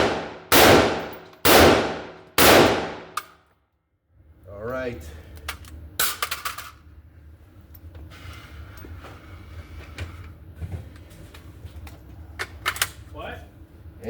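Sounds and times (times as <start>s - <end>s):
steady low rumble: 0.0s - 3.3s.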